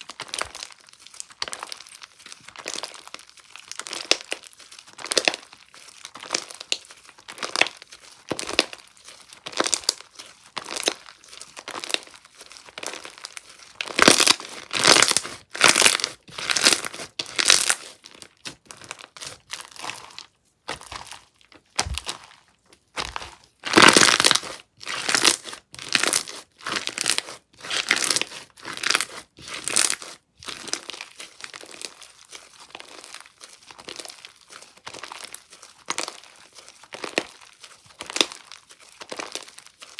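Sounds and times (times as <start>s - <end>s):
slime being squeezed: 10.6s - 32.1s.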